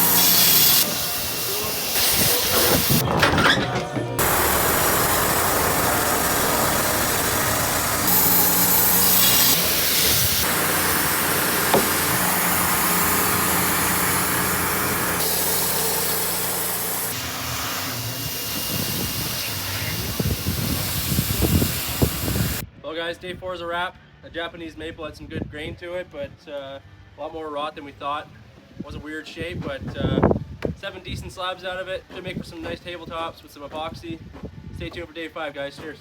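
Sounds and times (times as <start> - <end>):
engine-driven saw cutting log: 0.0 - 22.6.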